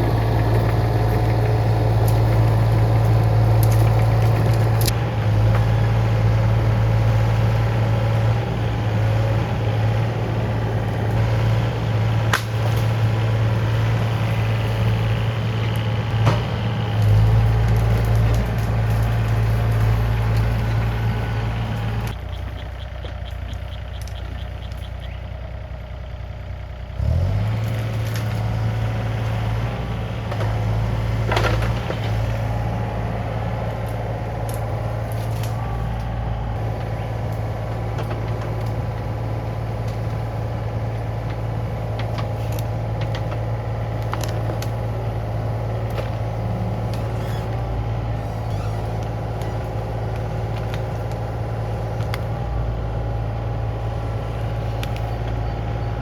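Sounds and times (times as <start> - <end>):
excavator diesel engine running: 0.0 - 56.0.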